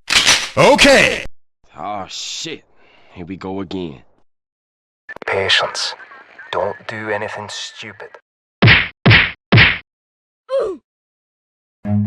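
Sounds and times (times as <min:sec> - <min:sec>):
comedic hit whacks: 0:08.6 - 0:09.8.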